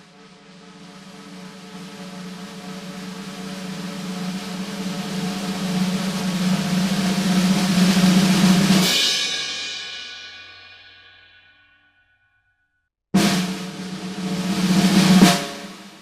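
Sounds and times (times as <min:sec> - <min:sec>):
snare drum roll: 0:00.1 - 0:09.6, 0:13.2 - 0:16.0.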